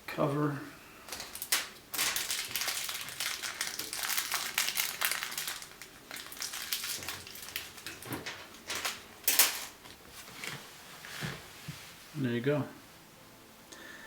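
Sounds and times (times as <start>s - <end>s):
plastic cover crinkling and clicking: 1.1s - 10.6s.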